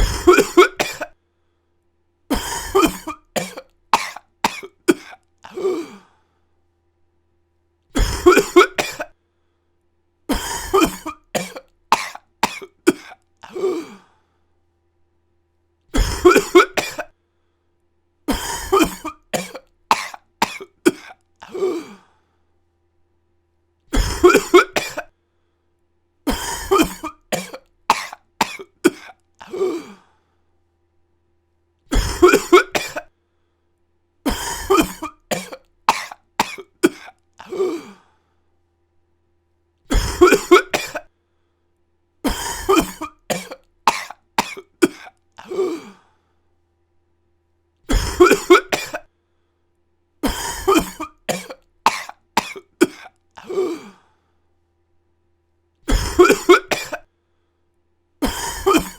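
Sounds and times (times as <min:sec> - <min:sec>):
person coughing: 0:00.0 - 0:01.2, 0:02.3 - 0:06.1, 0:08.0 - 0:09.2, 0:10.3 - 0:14.1, 0:15.9 - 0:17.2, 0:18.3 - 0:22.1, 0:23.9 - 0:25.1, 0:26.3 - 0:30.1, 0:31.9 - 0:33.1, 0:34.3 - 0:38.1, 0:39.9 - 0:41.1, 0:42.3 - 0:46.1, 0:47.9 - 0:49.1, 0:50.2 - 0:54.0, 0:55.9 - 0:57.1, 0:58.2 - 0:58.9.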